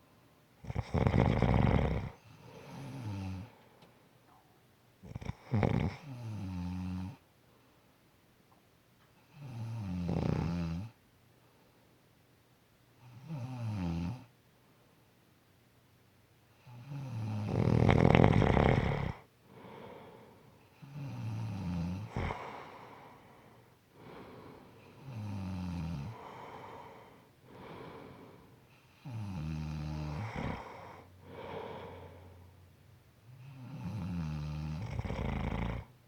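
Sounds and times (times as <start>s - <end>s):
person snoring: 0.6s - 3.5s, 5.1s - 7.2s, 17.0s - 20.2s, 20.9s - 23.2s, 29.0s - 32.4s, 33.4s - 35.9s
soft breath out: 19.5s - 20.6s, 22.1s - 25.1s, 26.1s - 28.9s, 30.5s - 32.6s.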